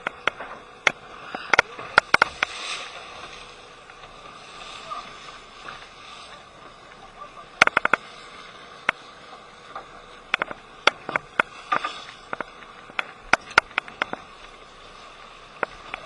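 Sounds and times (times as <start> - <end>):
sharp clicks and knocks: 0.0 - 2.6, 7.6 - 8.1, 9.7 - 14.6.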